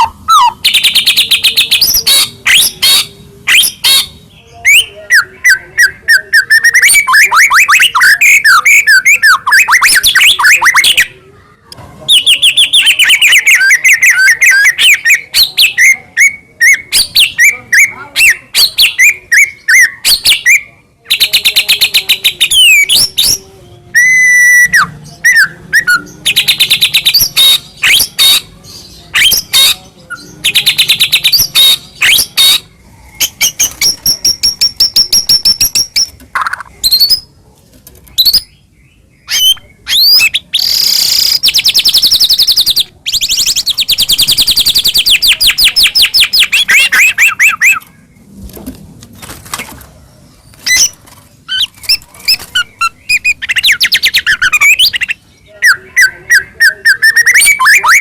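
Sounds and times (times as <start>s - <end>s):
bird singing trills: 38.2s - 48.2s, 50.5s - 58.0s.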